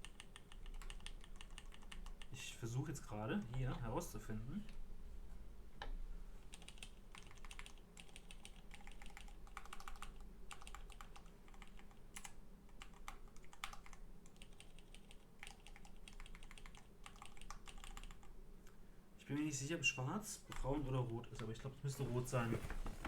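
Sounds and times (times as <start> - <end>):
mechanical keyboard keystrokes: 0.0 - 2.2, 6.5 - 18.2.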